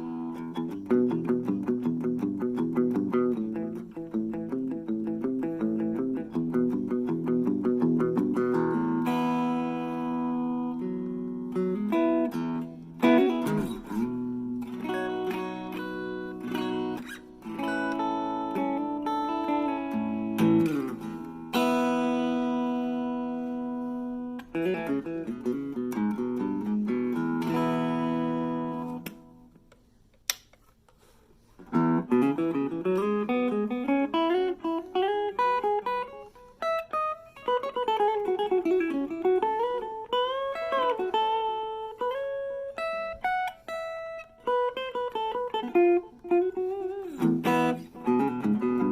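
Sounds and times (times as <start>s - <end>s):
electric guitar strummed chords: 0.0s - 29.6s, 31.7s - 48.9s
electric guitar lead lines: 0.0s - 29.8s, 31.6s - 48.9s
click: 29.0s - 31.0s.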